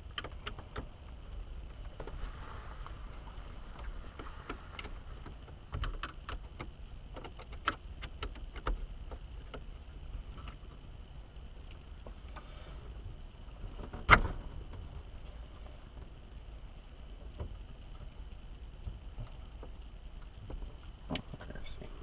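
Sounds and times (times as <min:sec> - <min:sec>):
steady low rumble: 0:00.0 - 0:22.0
small parts clicking and tapping: 0:03.8 - 0:09.7.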